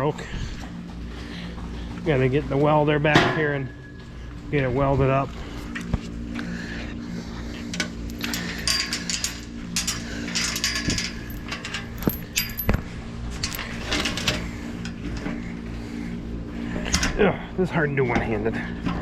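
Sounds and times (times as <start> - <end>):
metal gate hardware clinking: 8.1 - 13.9.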